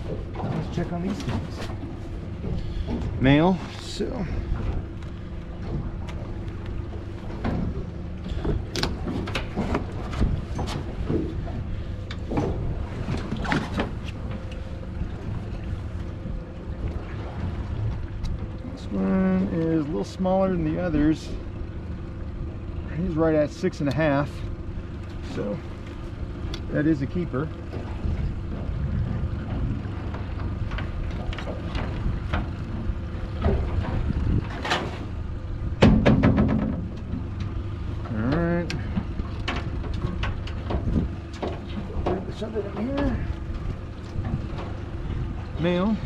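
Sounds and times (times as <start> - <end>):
boat engine rumble: 0.0 - 46.0
wind on microphone: 28.0 - 34.6, 43.2 - 46.0.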